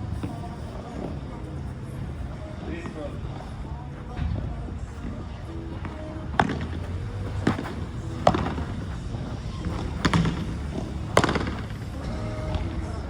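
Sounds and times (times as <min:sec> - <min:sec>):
ball bouncing: 0:05.8 - 0:11.8
rackets hitting a ball: 0:05.8 - 0:11.8.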